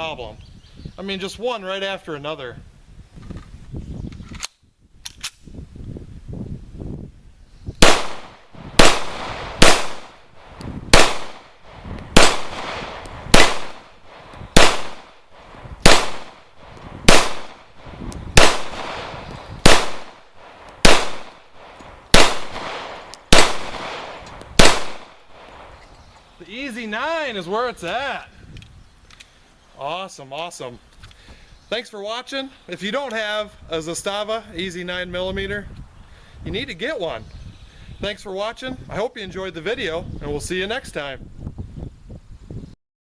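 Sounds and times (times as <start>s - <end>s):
pistol shots hitting steel plate: 12.2s - 13.9s.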